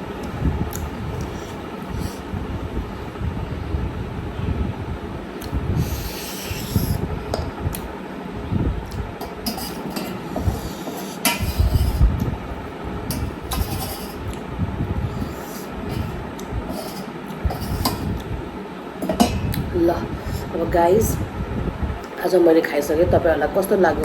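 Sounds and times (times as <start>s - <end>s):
rub or scrape: 9.5s - 12.0s, 13.1s - 14.2s, 15.2s - 18.1s.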